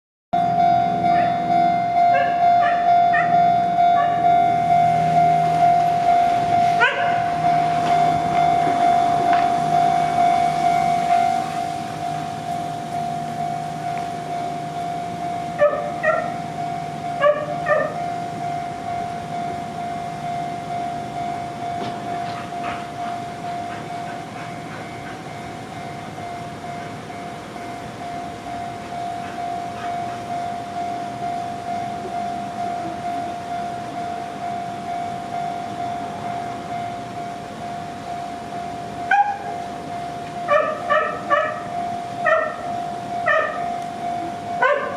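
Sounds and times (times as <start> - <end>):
level crossing warning bell: 0.4 - 44.9
train rumble: 0.4 - 44.9.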